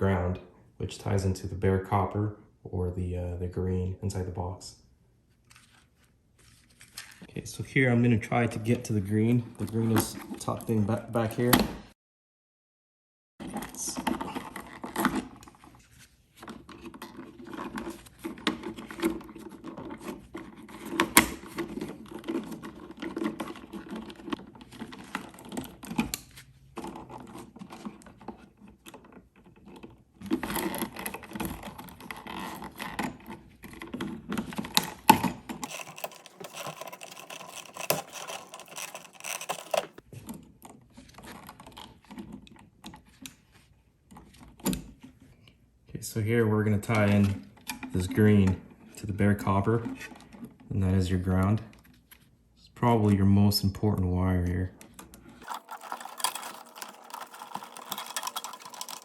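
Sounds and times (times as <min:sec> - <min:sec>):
hands handling wires clicking: 0:16.4 - 0:43.4, 0:54.8 - 0:59.0.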